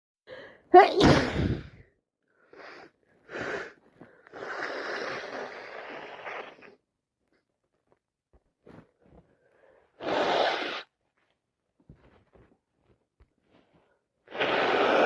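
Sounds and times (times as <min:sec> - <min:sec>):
person sneezing: 0:00.8 - 0:01.8
nose blowing: 0:02.5 - 0:06.8, 0:10.0 - 0:11.0, 0:14.3 - 0:15.0
person sniffing: 0:02.5 - 0:06.8, 0:10.0 - 0:10.9, 0:14.3 - 0:15.0.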